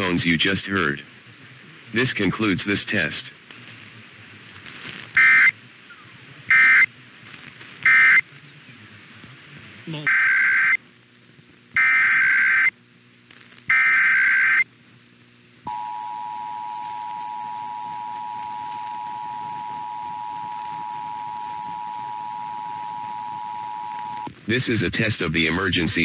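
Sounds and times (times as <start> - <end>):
digital data bursts screeching: 5.2 - 5.5, 6.5 - 6.9, 7.9 - 8.2, 10.1 - 10.8, 11.8 - 12.7, 13.7 - 14.6
steady two-tone alert signal: 15.7 - 24.3.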